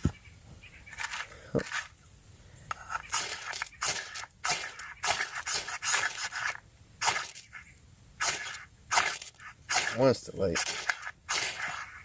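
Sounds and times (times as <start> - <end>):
ferro rod scraping: 2.7 - 7.6, 8.2 - 12.0.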